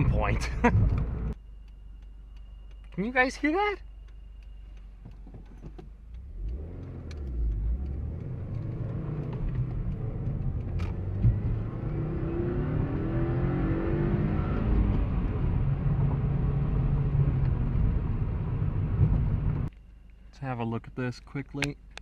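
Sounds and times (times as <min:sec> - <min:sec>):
faint ticks: 0:01.6 - 0:10.8
car engine accelerating: 0:04.3 - 0:19.7.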